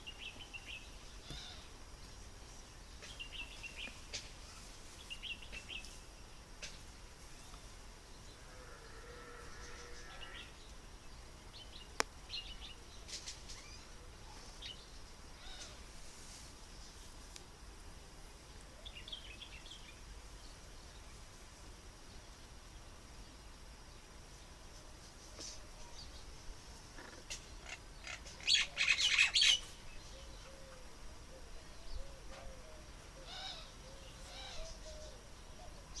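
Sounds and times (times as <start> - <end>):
small birds chirping: 0.0 - 8.6, 18.3 - 21.4, 22.1 - 36.0
outdoor background noise: 0.0 - 36.0
soft low coos: 8.3 - 10.6.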